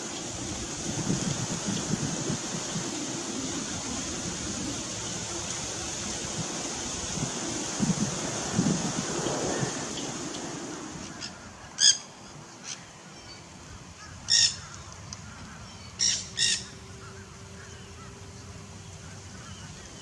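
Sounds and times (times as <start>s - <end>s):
outdoor rustle: 0.0s - 20.0s
bird calling: 9.2s - 20.0s.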